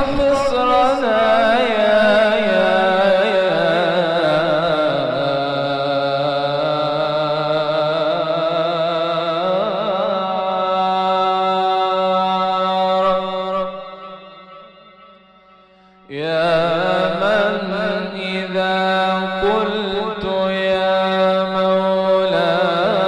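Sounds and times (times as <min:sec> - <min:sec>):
person chanting melismatic vocal: 0:00.0 - 0:14.7, 0:16.0 - 0:23.0.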